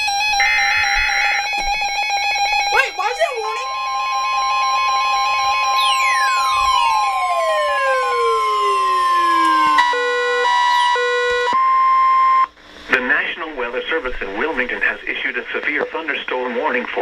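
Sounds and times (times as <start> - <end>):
steady high alarm tone: 0.0 - 12.5
tones gliding downward: 5.6 - 10.9.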